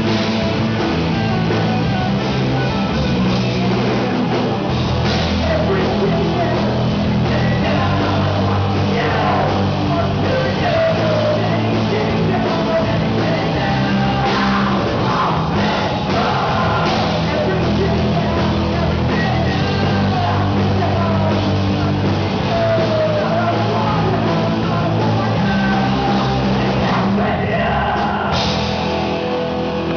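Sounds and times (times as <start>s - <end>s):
bass guitar: 0.0s - 29.9s
drums: 0.0s - 29.9s
electric guitars: 0.0s - 29.9s
person singing: 5.2s - 28.5s.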